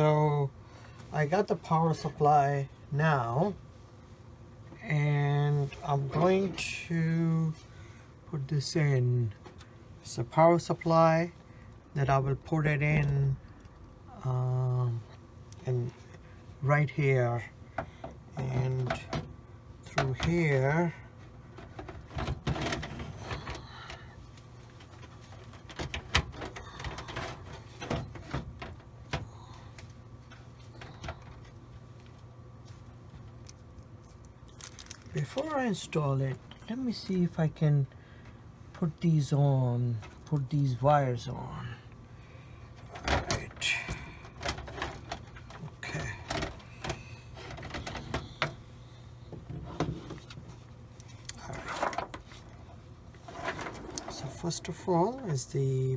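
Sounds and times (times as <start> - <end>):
power supply clicking and scraping: 21.5 - 29.2, 42.8 - 54.9.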